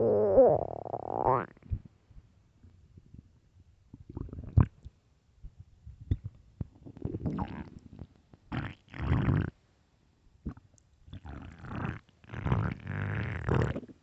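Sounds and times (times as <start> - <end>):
stomach growling: 0.0 - 1.8, 4.0 - 4.8, 6.8 - 9.5, 10.5 - 14.0.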